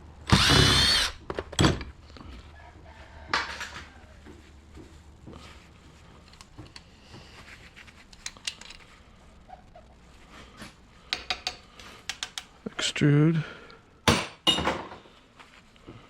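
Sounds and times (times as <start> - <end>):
small clicks and scrapes: 6.2 - 9.0.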